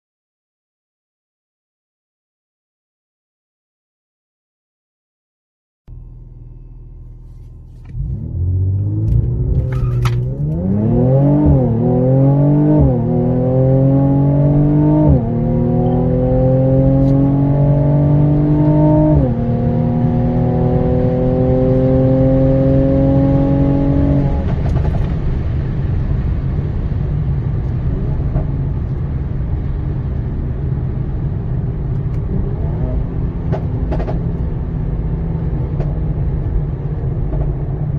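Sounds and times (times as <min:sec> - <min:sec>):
exhaust cracks: 0:05.9 - 0:11.8, 0:24.0 - 0:37.9
car engine accelerating through gears: 0:05.9 - 0:37.9.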